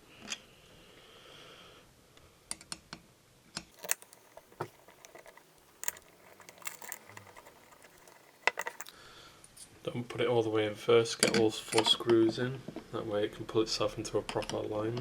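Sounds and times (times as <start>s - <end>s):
small screws and hex key clicking: 3.8s - 8.9s.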